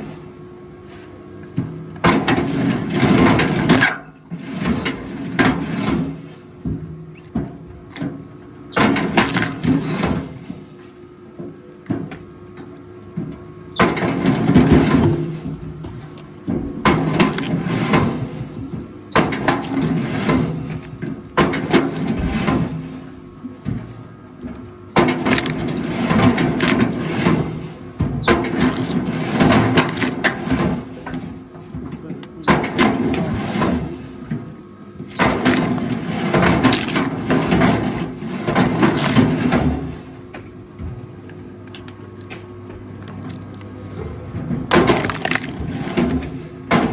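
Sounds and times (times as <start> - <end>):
log splitter motor humming: 40.2 - 46.9.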